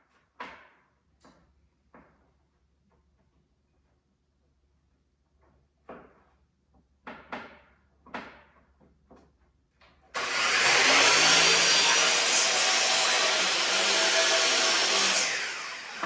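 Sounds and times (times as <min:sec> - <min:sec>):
electric machine running loudly: 0:10.2 - 0:16.0.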